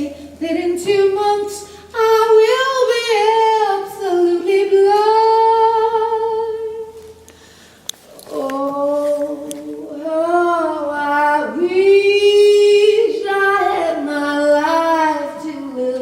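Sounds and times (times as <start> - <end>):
woman singing unaccompanied: 0.0 - 7.0, 8.1 - 16.0.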